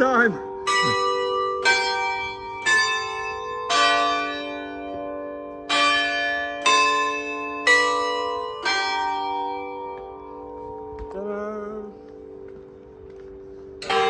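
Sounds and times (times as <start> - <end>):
church bells ringing: 0.0 - 14.0.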